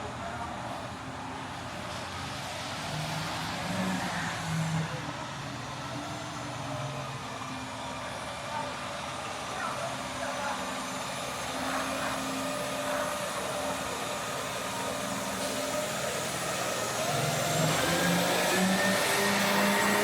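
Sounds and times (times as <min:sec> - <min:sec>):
city noise hiss: 0:00.0 - 0:20.0
vehicle speeding up: 0:16.8 - 0:20.0.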